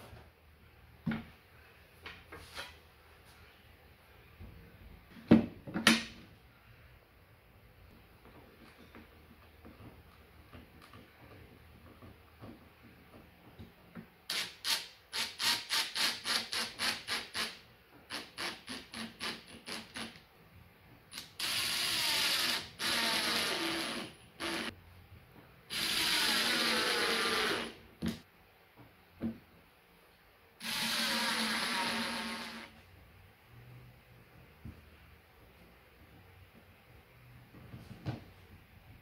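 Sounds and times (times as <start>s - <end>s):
power drill running: 25.7s - 27.8s, 30.6s - 32.7s.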